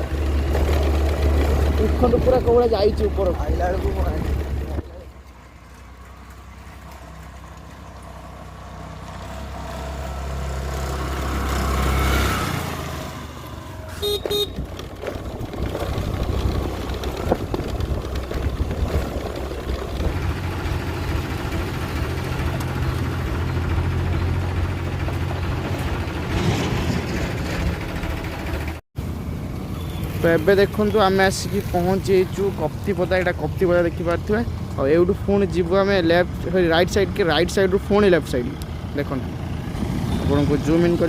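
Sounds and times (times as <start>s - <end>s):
vehicle engine rumble: 0.0s - 41.0s
car horn toots: 13.9s - 14.7s.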